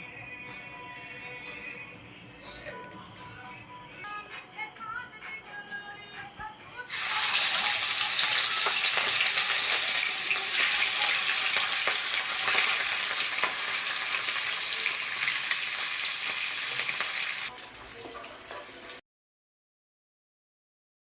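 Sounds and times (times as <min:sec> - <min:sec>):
food frying in hot oil: 0:06.9 - 0:19.0.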